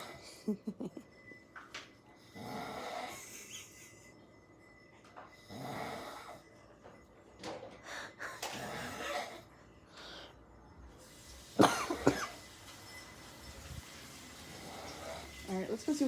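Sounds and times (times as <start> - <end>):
person snoring: 2.3 - 3.3, 5.5 - 6.4
cough-like bursts: 11.6 - 12.4.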